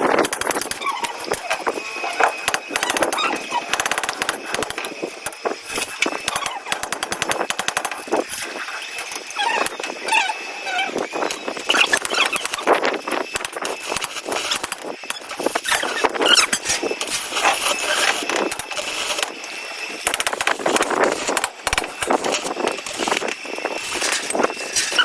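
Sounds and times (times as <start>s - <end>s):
small birds chirping: 8.8s - 12.7s.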